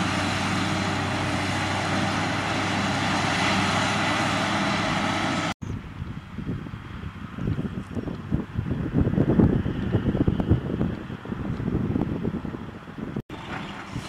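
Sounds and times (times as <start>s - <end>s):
forage harvester engine drone: 0.0s - 7.7s, 12.1s - 14.0s
wind buffeting microphone: 0.0s - 14.0s.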